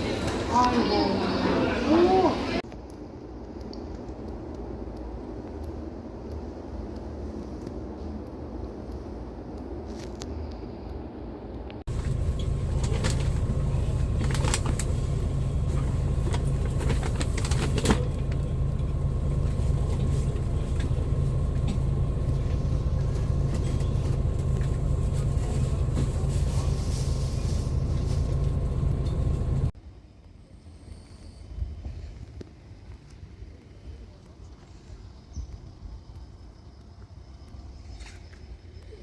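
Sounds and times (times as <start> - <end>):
road vehicle rumble: 0.0 - 2.6, 10.3 - 29.8.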